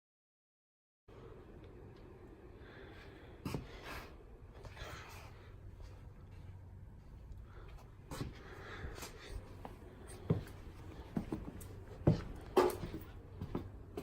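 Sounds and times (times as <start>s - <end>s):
faint steady low hum: 1.1s - 14.0s.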